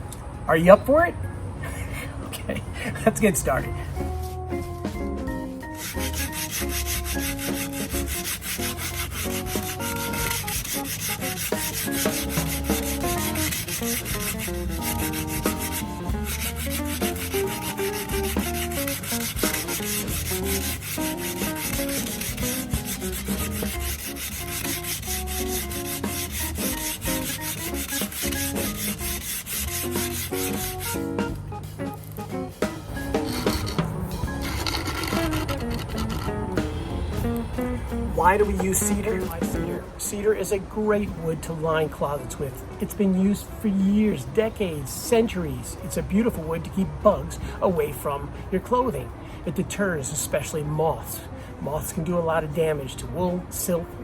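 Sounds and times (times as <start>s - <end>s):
background music: 0.0s - 54.0s
sandpaper rubbing on wood: 5.8s - 31.3s, 33.1s - 36.3s, 38.2s - 39.8s.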